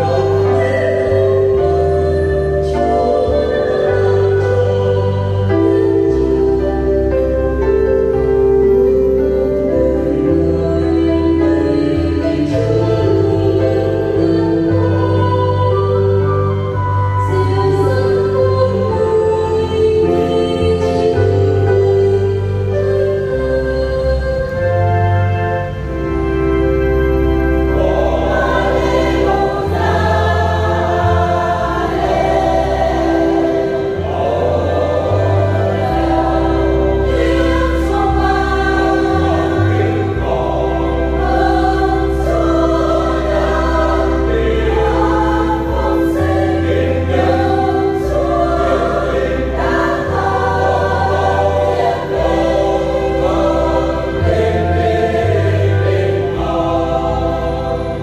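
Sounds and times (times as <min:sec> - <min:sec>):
church choir singing a hymn: 0:00.0 - 0:58.0
long held bass notes: 0:00.0 - 0:58.0.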